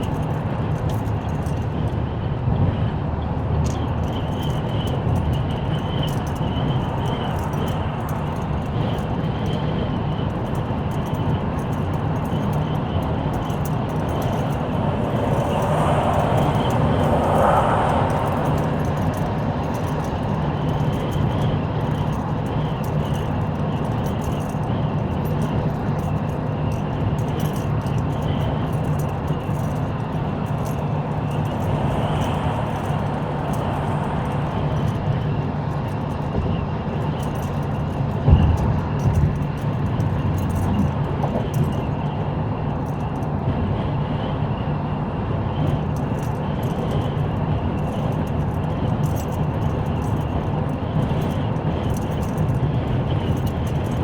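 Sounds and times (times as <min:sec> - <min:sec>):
road noise: 0:00.0 - 0:54.0
car engine: 0:12.0 - 0:24.4, 0:27.5 - 0:36.3.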